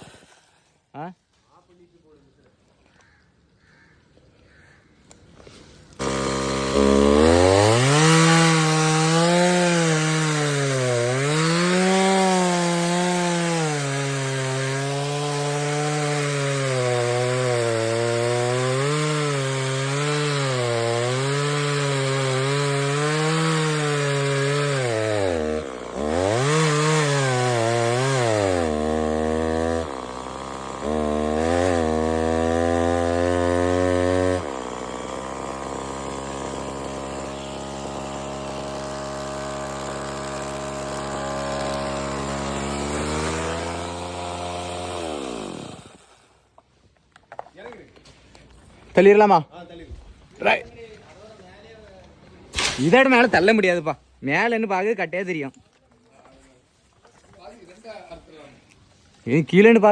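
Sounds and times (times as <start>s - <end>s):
chainsaw cutting wood: 0.0s - 0.9s, 5.4s - 47.5s, 52.5s - 53.8s.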